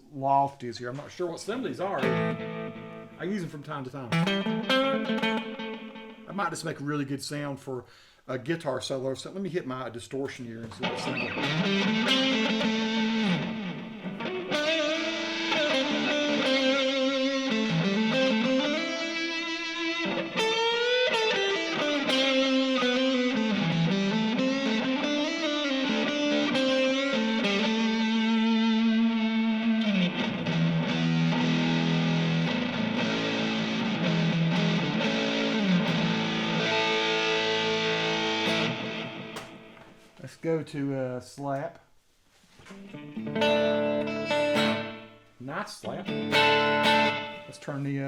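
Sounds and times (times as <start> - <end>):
distorted electric guitar lead: 1.9 - 3.4, 4.0 - 6.4, 10.8 - 39.9, 42.8 - 45.2, 45.8 - 47.6.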